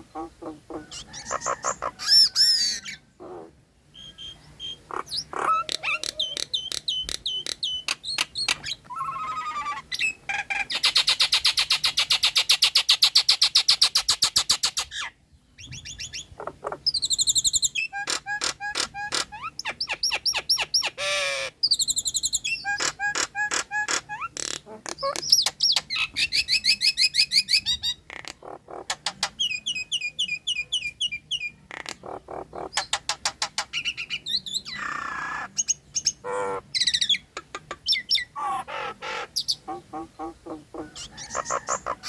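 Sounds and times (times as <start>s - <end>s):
myna singing whistles and clicks: 5.6s - 9.2s.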